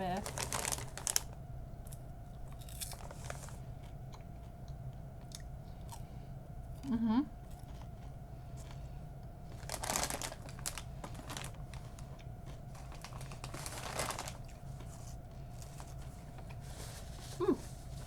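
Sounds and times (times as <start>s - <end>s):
crunching candy popcorn: 0.0s - 6.1s, 9.5s - 16.6s.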